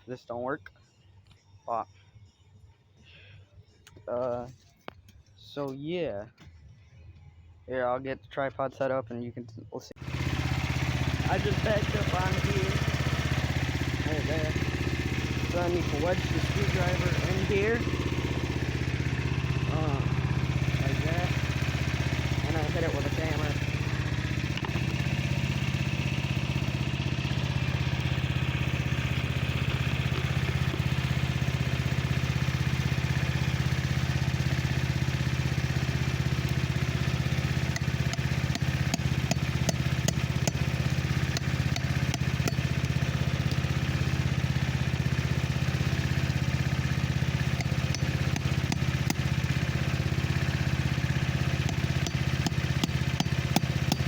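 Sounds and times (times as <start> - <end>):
low machine hum: 10.0 - 54.0.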